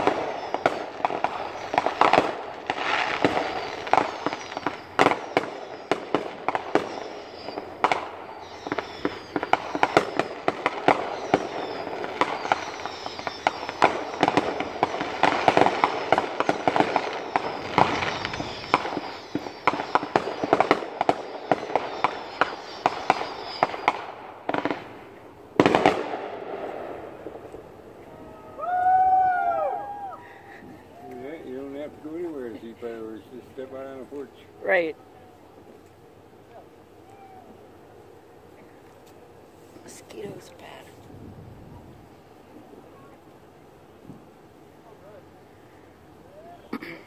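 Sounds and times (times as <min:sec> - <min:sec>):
fireworks bangs and crackles: 0:00.0 - 0:28.8, 0:30.2 - 0:34.9, 0:39.8 - 0:43.2.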